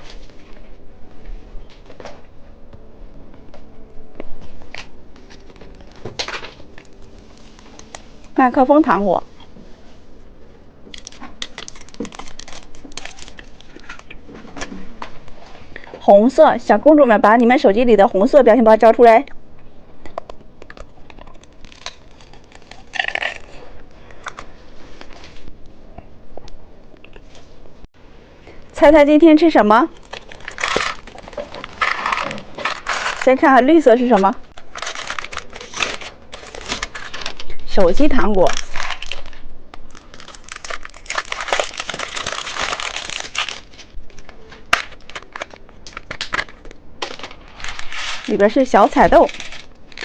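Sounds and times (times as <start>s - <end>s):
plastic candy wrapper crinkling: 10.9s - 14.2s, 20.5s - 23.6s, 29.9s - 33.4s, 34.0s - 50.0s
packaging rustling: 10.9s - 14.6s, 29.9s - 33.4s, 34.1s - 50.0s.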